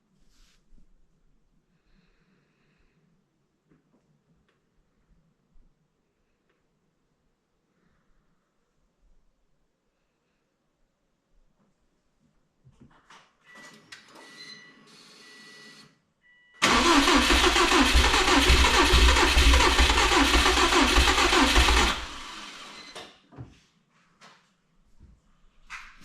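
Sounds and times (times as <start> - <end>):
car engine running: 16.6 - 22.9
starter cranking engine: 16.6 - 23.0.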